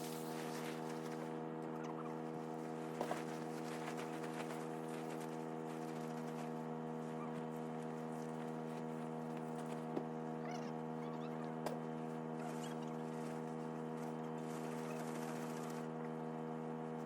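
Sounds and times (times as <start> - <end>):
low mechanical hum: 0.0 - 17.0.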